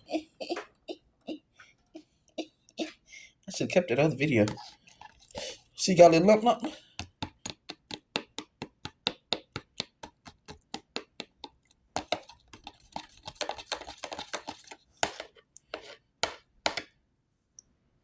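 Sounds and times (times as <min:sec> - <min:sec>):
fork beating eggs in bowl: 0:03.6 - 0:16.9.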